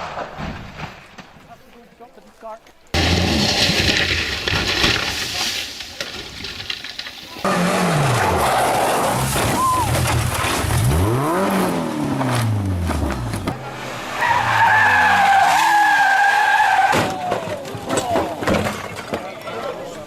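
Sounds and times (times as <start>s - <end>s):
rally car engine revving: 7.4s - 16.9s
voices: 13.9s - 20.0s.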